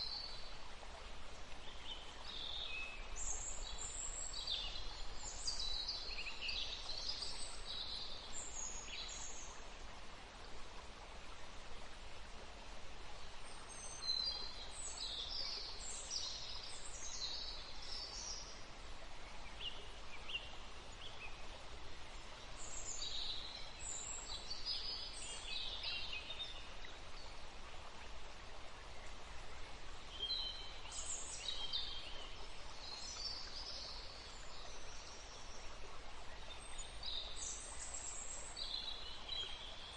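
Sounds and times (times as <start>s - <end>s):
river flowing: 0.0s - 39.9s
songbirds singing: 28.7s - 39.9s.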